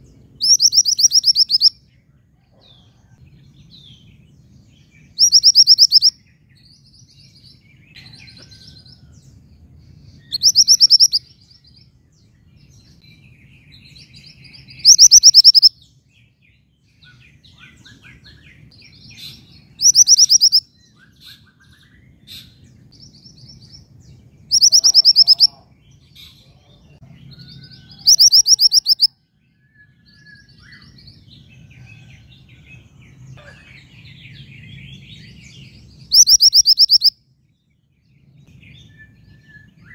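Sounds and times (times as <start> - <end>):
other birds chirping: 0.0 - 1.8, 5.0 - 9.1, 9.9 - 15.8, 16.6 - 29.2, 29.8 - 37.2
bird trilled call: 0.4 - 1.8, 5.2 - 6.2, 10.3 - 11.3, 14.8 - 15.8, 19.8 - 21.7, 24.5 - 26.4, 27.7 - 29.1, 36.1 - 37.1.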